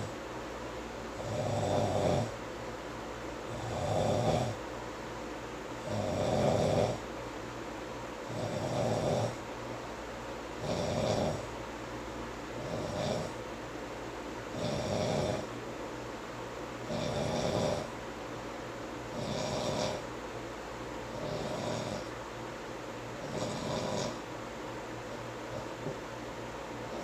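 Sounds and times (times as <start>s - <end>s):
man snoring: 1.2s - 2.4s, 3.5s - 4.6s, 5.8s - 7.1s, 8.3s - 9.4s, 10.6s - 11.5s, 12.6s - 13.4s, 14.5s - 15.5s, 16.8s - 17.9s, 19.1s - 20.1s, 21.1s - 22.2s, 23.2s - 24.3s.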